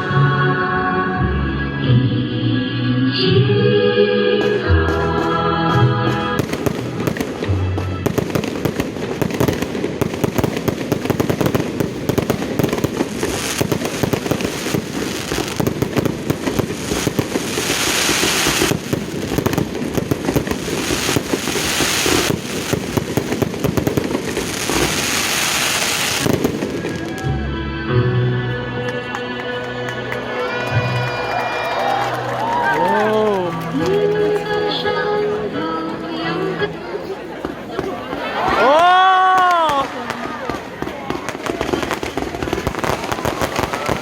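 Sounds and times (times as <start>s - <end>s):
music playing: 0.0s - 11.4s, 24.6s - 37.3s
fireworks crackling: 6.2s - 27.3s, 37.4s - 44.0s
fireworks hissing: 6.4s - 27.2s, 39.7s - 44.0s.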